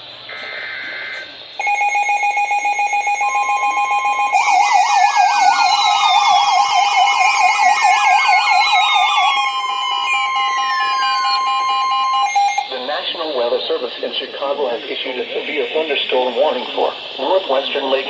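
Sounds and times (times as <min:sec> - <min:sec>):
digital header tones: 0:00.3 - 0:12.8
warbling siren-like alarm: 0:00.4 - 0:12.8.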